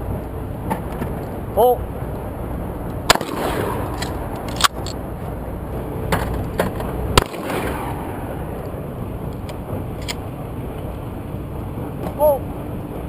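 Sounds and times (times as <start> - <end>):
low background rumble: 0.0 - 13.0
shotgun shots: 3.1 - 4.9, 7.2 - 8.3.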